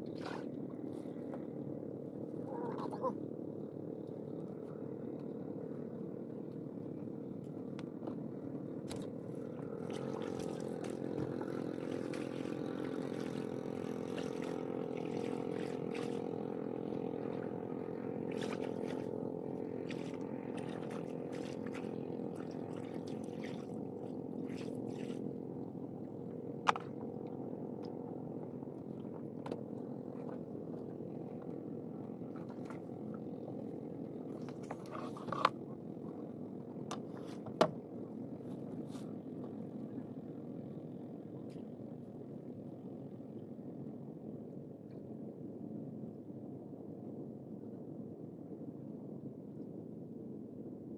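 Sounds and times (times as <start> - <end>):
motor engine running: 8.9 - 36.3.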